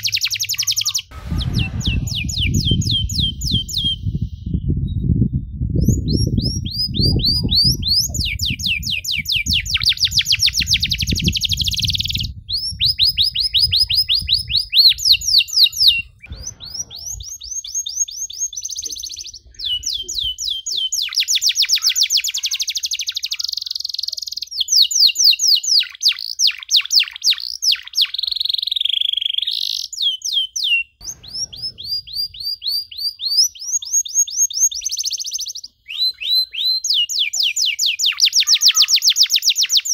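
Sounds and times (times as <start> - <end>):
canary singing trills: 0.0 - 4.7, 5.8 - 39.9
low rumble: 1.1 - 9.8, 16.0 - 17.6, 31.0 - 33.0.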